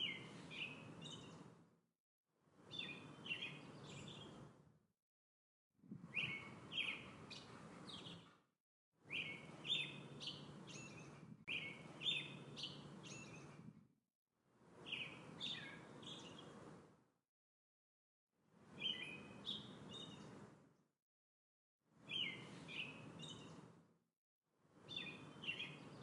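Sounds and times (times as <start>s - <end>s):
songbirds chirping: 0.0s - 1.6s, 2.6s - 4.6s, 6.0s - 8.4s, 9.0s - 13.7s, 14.7s - 16.9s, 18.6s - 20.6s, 22.0s - 23.8s, 24.8s - 26.0s.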